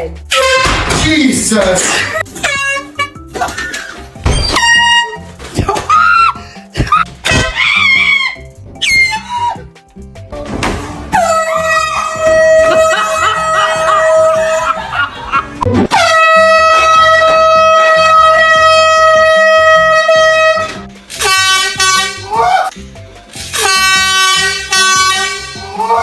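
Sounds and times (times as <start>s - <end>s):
music: 0.0s - 26.0s
air horn blasting: 11.1s - 14.8s, 15.9s - 22.4s, 23.5s - 26.0s.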